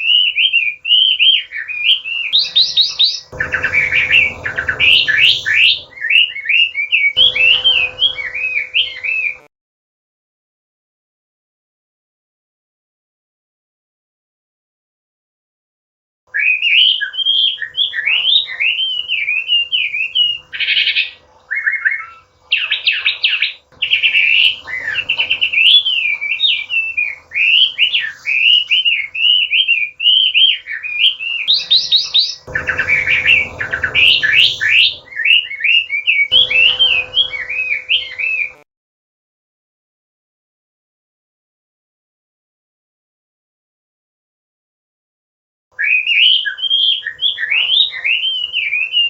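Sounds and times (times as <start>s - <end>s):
bird singing whistled phrases: 0.0s - 9.5s, 16.3s - 38.6s, 45.8s - 49.0s
bird trills: 0.0s - 9.5s, 16.3s - 38.6s, 45.8s - 49.0s.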